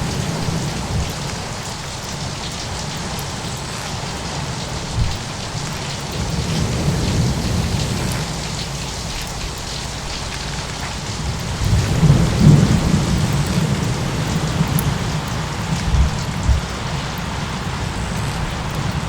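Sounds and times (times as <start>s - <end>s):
steady rain: 0.0s - 19.0s
rolling thunder: 6.1s - 19.0s
short low thumps: 15.8s - 16.9s.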